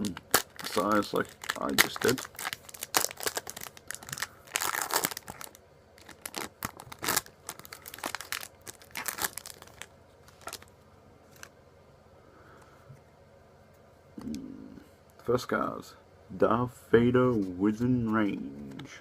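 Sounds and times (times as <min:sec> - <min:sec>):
wrapper tearing and crinkling: 0:00.0 - 0:10.7.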